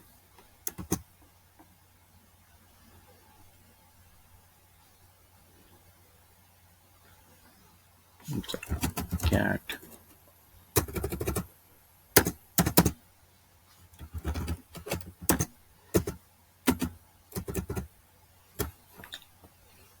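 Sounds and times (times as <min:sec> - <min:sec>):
computer keyboard typing: 0:00.7 - 0:01.1, 0:08.3 - 0:09.4, 0:10.8 - 0:11.5, 0:12.2 - 0:13.0, 0:14.0 - 0:17.9, 0:18.6 - 0:19.2.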